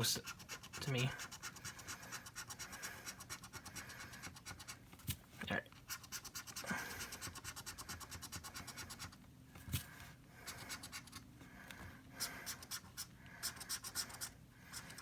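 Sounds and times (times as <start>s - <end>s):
scratching lottery ticket: 0.0s - 4.9s, 5.8s - 9.2s, 12.2s - 15.0s.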